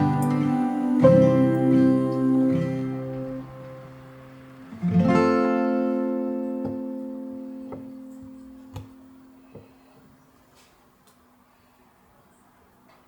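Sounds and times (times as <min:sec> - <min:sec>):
acoustic guitar chord ringing: 0:00.0 - 0:09.5.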